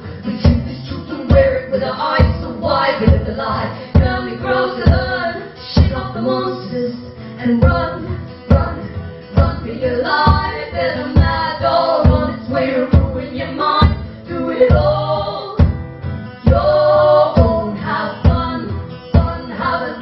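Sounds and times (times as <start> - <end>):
band singing in harmony: 8.8 - 15.6, 16.4 - 20.0.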